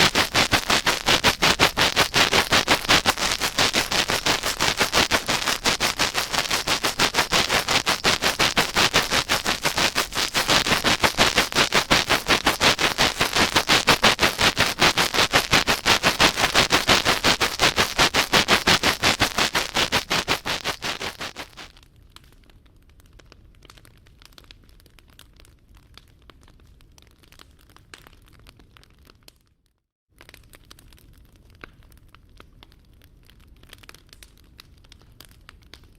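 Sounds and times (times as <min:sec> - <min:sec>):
rubbing on microphone: 0:00.0 - 0:21.7
faint crackle: 0:00.0 - 0:22.3.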